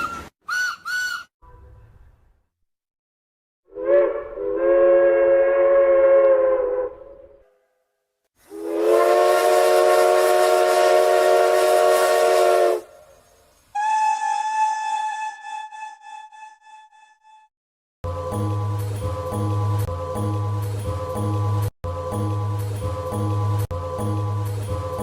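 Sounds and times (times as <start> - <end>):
steam train chime whistle: 8.5 - 13.0.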